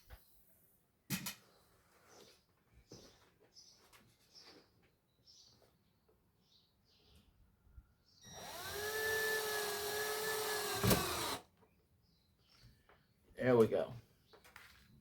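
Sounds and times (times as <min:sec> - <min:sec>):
power drill driving a screw: 0:08.2 - 0:11.5.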